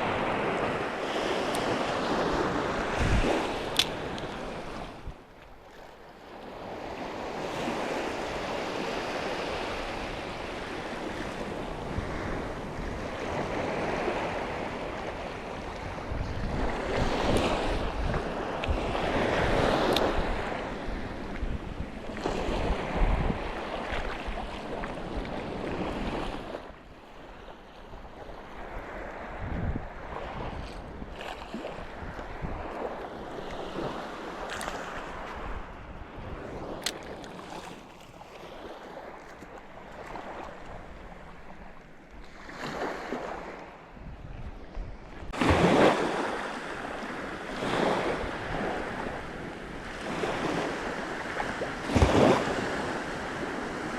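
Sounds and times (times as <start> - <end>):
wind buffeting microphone: 0.0 - 5.4, 6.5 - 53.9
sea surf washing: 0.0 - 44.1, 44.7 - 53.9.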